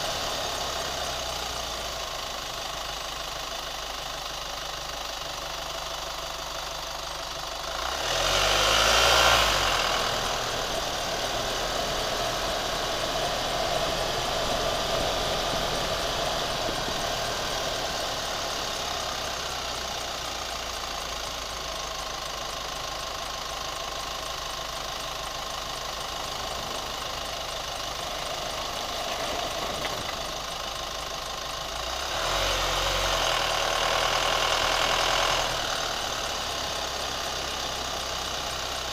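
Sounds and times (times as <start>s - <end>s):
engine ticking: 0.0s - 38.9s
pickup engine idling and revving: 0.0s - 38.9s.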